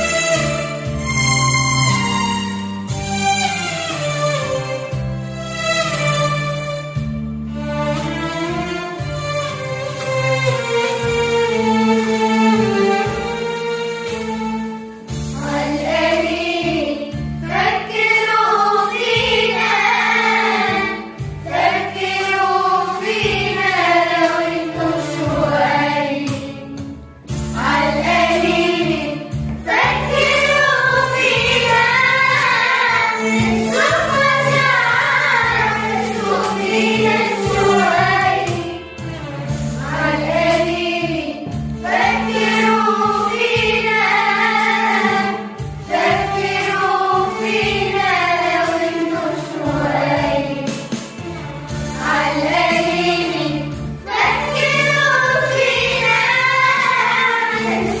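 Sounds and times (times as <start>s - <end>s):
instrumental backing with bass: 0.0s - 58.0s
choir singing pop song: 15.4s - 58.0s.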